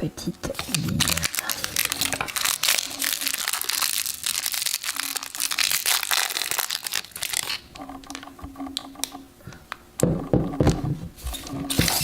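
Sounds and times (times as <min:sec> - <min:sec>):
plastic packaging crinkling: 0:00.6 - 0:08.3, 0:11.3 - 0:12.0.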